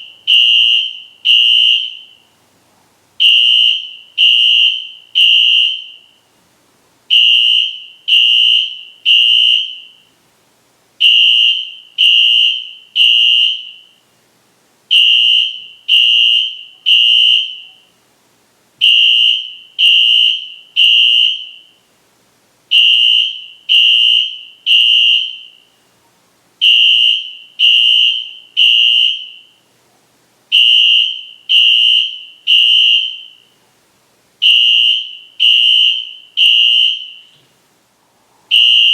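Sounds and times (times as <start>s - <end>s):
fire alarm horn blasts: 0.0s - 2.3s, 3.2s - 6.2s, 7.1s - 10.1s, 11.0s - 14.0s, 14.9s - 17.9s, 18.8s - 21.8s, 22.7s - 25.8s, 26.6s - 29.7s, 30.5s - 33.6s, 34.4s - 37.4s, 38.5s - 38.9s.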